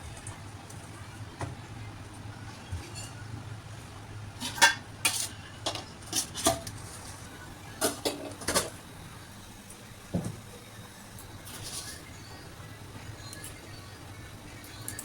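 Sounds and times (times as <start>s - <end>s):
utensils clinking against dishes: 4.4s - 7.2s, 7.8s - 8.8s.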